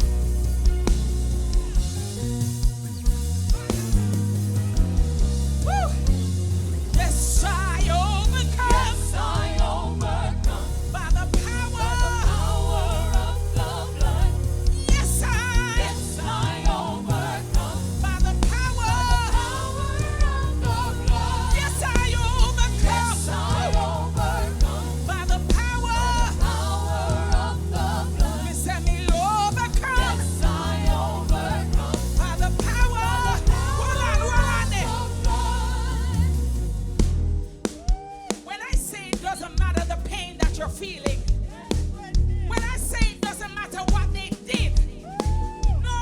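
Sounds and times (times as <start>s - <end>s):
gospel band playing: 0.0s - 46.0s
singers singing with vibrato: 6.9s - 37.0s.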